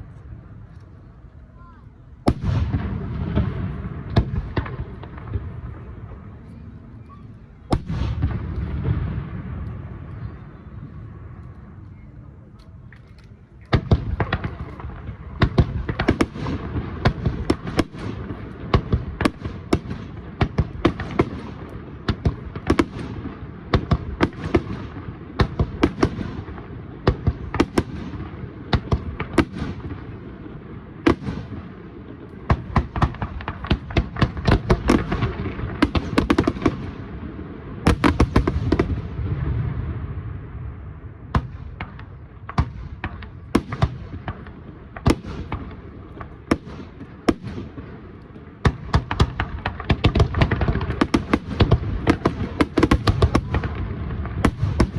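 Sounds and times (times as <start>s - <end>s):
rumbling echo: 0.0s - 12.5s
fireworks bursting with sharp bangs: 0.0s - 54.9s.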